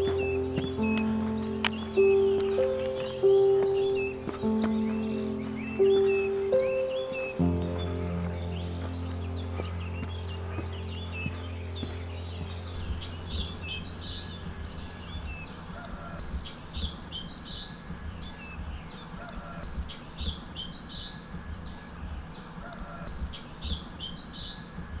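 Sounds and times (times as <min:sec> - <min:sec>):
background music: 0:00.0 - 0:17.4
songbird singing rapid high notes: 0:00.0 - 0:25.0.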